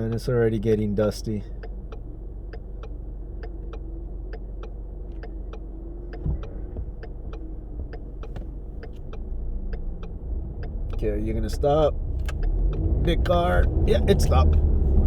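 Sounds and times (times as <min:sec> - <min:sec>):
engine and road rumble: 0:00.0 - 0:15.0
turn signal ticking: 0:00.0 - 0:15.0
dull thump: 0:06.2 - 0:06.9, 0:07.8 - 0:08.6.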